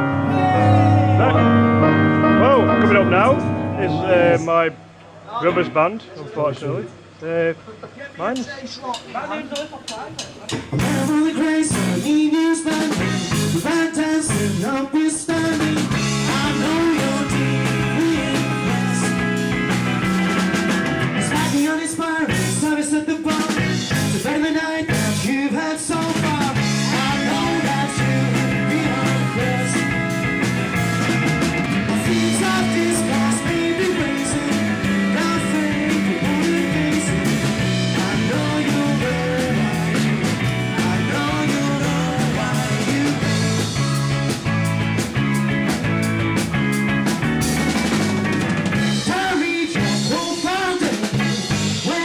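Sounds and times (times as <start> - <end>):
person singing: 0.0 - 4.5, 10.8 - 19.3, 24.2 - 30.1, 31.9 - 44.2, 49.0 - 52.0
rock band playing: 0.0 - 5.8, 10.5 - 52.0.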